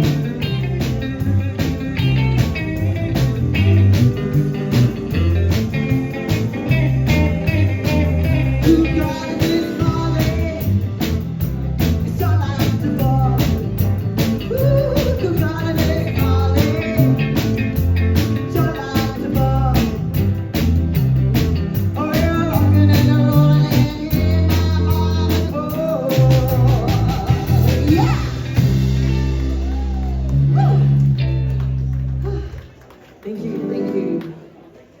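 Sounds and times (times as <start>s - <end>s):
live rock and roll band: 0.0s - 32.5s
person singing: 6.7s - 10.9s, 12.0s - 17.6s, 18.3s - 20.2s, 21.9s - 28.6s.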